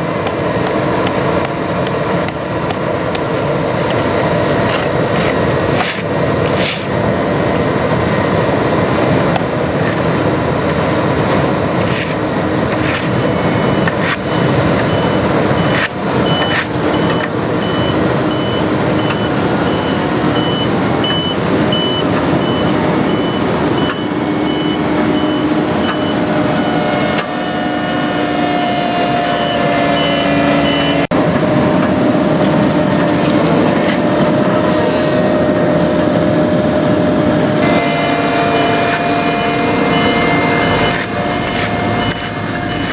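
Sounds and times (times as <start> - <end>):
road-paving machinery running: 0.0 - 42.9
vehicle backup alarm beeping: 13.1 - 27.5, 28.7 - 31.1, 37.6 - 42.9.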